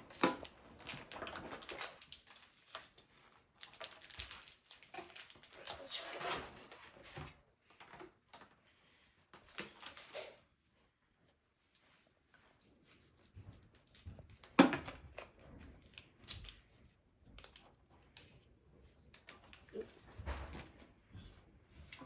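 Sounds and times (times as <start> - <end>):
foil wrappers crinkling and tearing: 0.0 - 6.9, 9.5 - 10.4.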